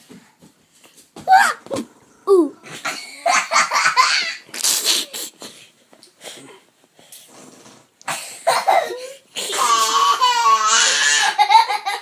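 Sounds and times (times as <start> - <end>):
person speaking: 1.3 - 2.8
child blowing raspberries: 4.5 - 5.6.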